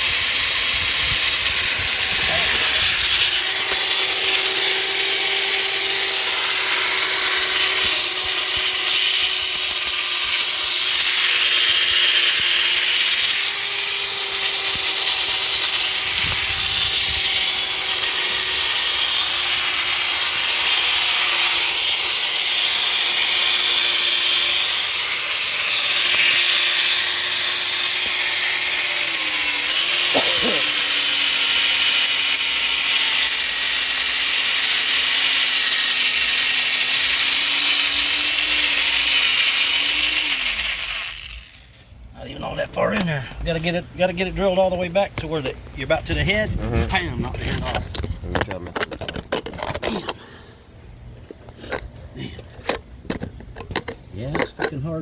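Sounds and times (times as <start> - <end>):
electric drill boring into steel: 0.0 - 41.9.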